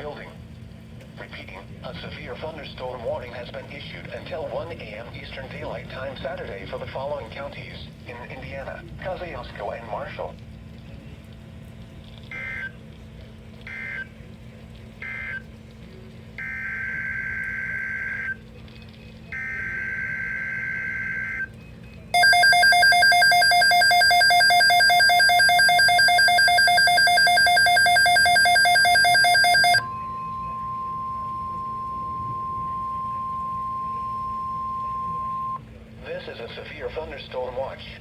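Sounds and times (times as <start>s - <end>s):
pulsing electronic alarm: 16.4s - 18.4s, 19.4s - 21.5s, 22.2s - 35.6s
steady single alarm tone: 22.2s - 35.6s
warbling data bursts: 22.2s - 35.6s.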